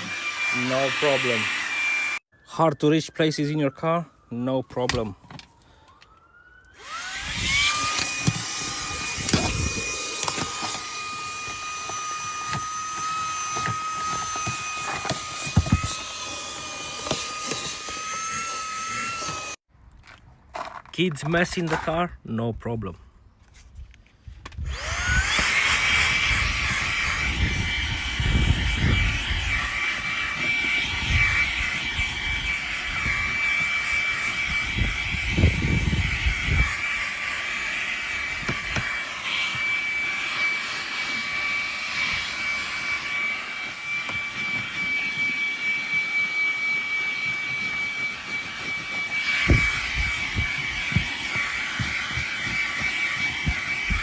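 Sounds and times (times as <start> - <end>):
handheld vacuum motor whine: 0.0 - 2.2, 4.7 - 19.6, 24.4 - 54.0
vacuum nozzle bumps: 7.0 - 19.6, 25.0 - 46.0, 47.0 - 54.0.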